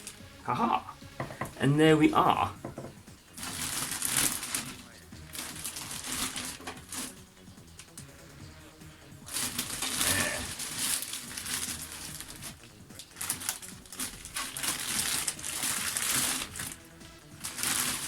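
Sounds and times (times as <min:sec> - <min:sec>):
rustling and scraping of packing: 0:02.8 - 0:07.9, 0:09.2 - 0:18.0.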